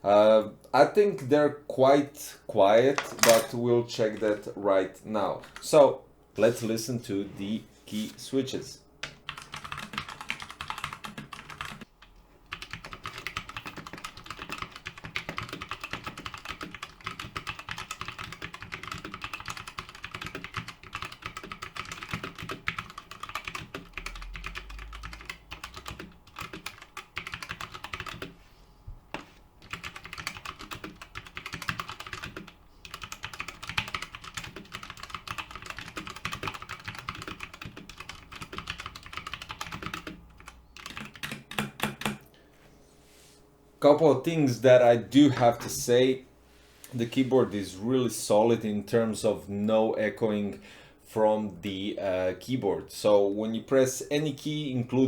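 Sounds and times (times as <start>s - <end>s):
fast typing on mechanical keyboard: 9.3s - 11.9s, 12.5s - 28.4s, 29.6s - 42.2s.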